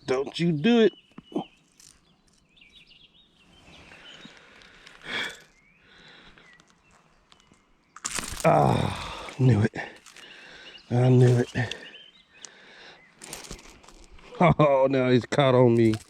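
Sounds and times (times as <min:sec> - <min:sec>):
small birds chirping: 0:00.0 - 0:16.0
rustling and handling noise: 0:01.2 - 0:05.7, 0:06.4 - 0:12.0, 0:13.1 - 0:14.4, 0:15.6 - 0:16.0
fish thrashing in hand: 0:08.0 - 0:09.4.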